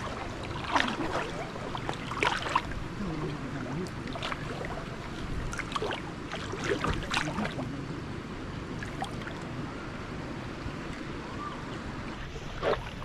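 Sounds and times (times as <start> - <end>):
knocks and splashes: 0.0 - 7.7, 12.4 - 13.0
steady water or rain noise: 0.0 - 13.0.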